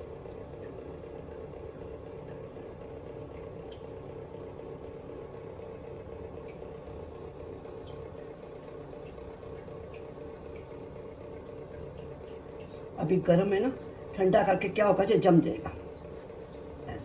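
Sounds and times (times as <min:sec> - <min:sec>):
mechanical hum: 0:00.0 - 0:17.0.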